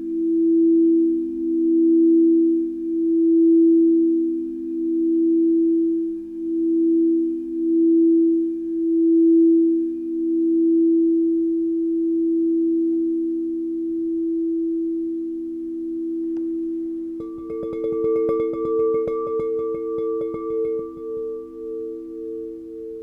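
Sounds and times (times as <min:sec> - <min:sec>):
crystal singing bowls humming: 0:17.0 - 0:23.0.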